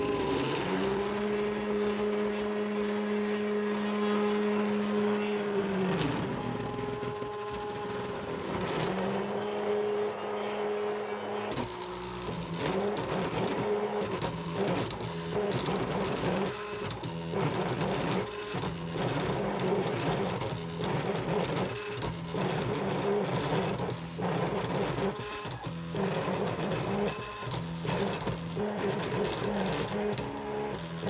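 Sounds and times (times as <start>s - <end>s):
stepper motors whining: 0.0s - 22.7s.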